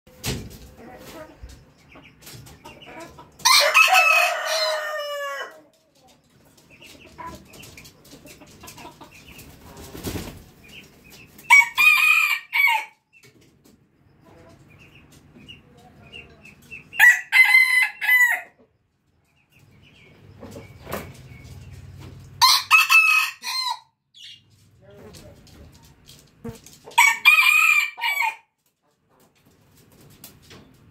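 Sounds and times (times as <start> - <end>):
rooster crowing: 3.4 - 5.6, 11.5 - 12.9, 22.4 - 23.9, 27.0 - 28.4.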